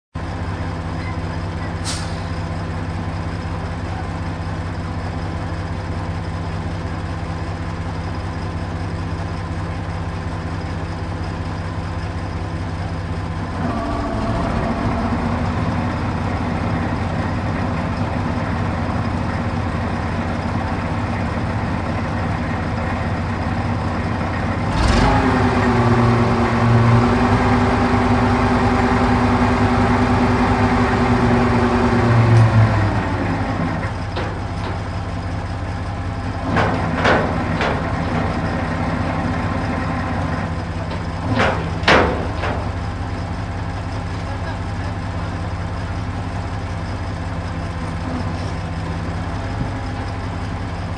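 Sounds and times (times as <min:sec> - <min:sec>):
crane engine running: 0:00.2 - 0:50.9
thump: 0:41.3 - 0:42.7.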